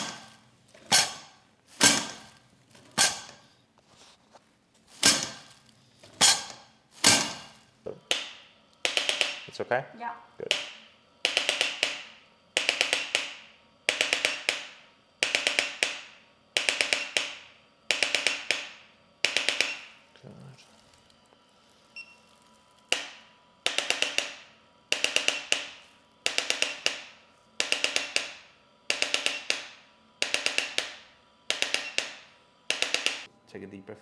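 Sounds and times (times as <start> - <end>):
percussive beat of tapping strikes: 0.0 - 2.3, 6.2 - 9.5, 10.4 - 16.0, 23.7 - 33.3.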